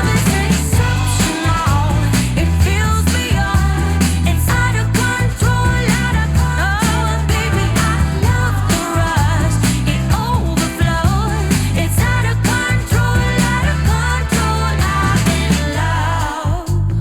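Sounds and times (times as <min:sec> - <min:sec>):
pop song with heavy bass: 0:00.0 - 0:17.0.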